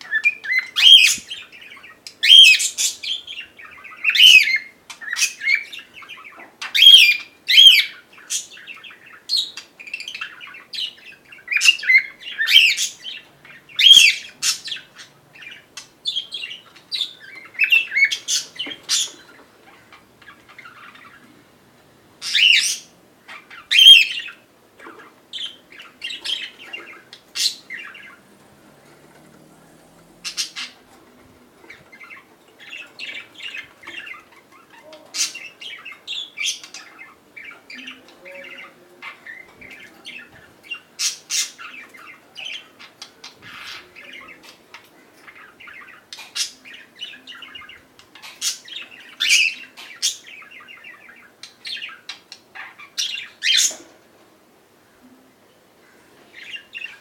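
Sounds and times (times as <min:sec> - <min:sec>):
cockatiel chirping and chattering: 0:00.0 - 0:21.3, 0:30.2 - 0:30.8.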